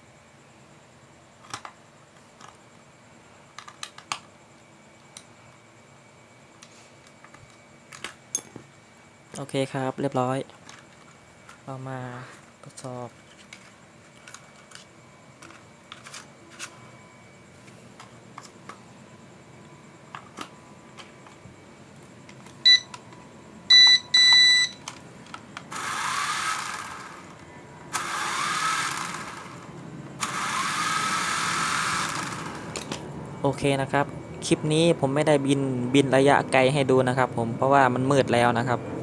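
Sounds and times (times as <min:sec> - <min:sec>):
short electronic beeps: 0:22.7 - 0:22.9, 0:23.7 - 0:24.8
toy drone propellers whirring: 0:25.7 - 0:33.0.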